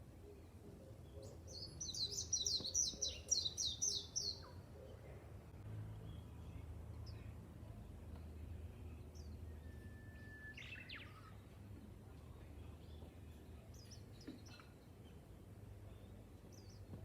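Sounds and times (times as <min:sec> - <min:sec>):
small birds chirping: 0:00.0 - 0:17.0
bird whistled song: 0:01.2 - 0:04.5, 0:09.5 - 0:11.4.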